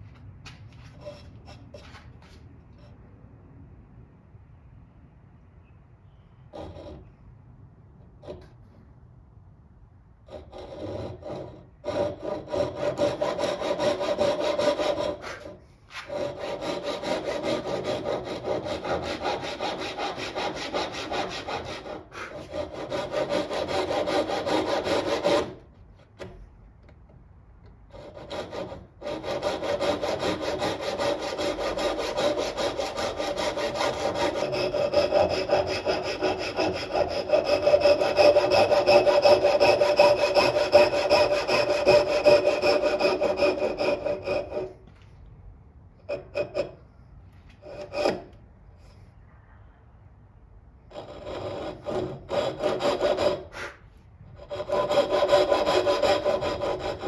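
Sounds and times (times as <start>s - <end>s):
hand saw cutting wood: 10.3s - 26.4s, 27.9s - 44.8s, 46.1s - 46.8s, 47.5s - 48.4s, 50.9s - 53.8s, 54.4s - 57.0s.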